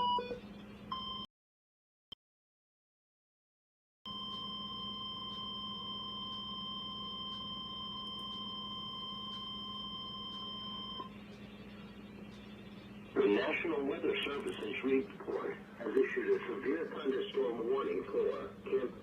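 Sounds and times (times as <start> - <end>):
steady high alarm tone: 4.1 - 15.6
faint low hum: 4.1 - 19.0.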